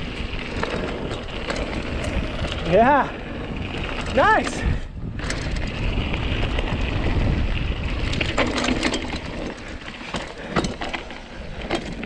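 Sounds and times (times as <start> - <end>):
bike clicks and clatters: 0.0 - 12.0
wind and tyre rumble: 0.0 - 12.0.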